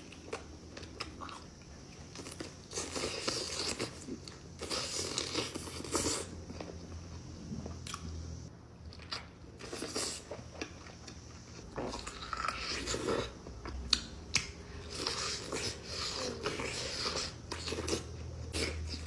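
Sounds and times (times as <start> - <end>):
person chewing with crunching: 0.0 - 8.1, 8.8 - 19.0.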